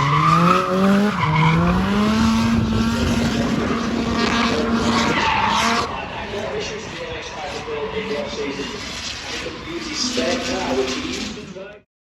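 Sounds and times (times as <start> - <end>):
car engine at high revs: 0.0 - 11.4.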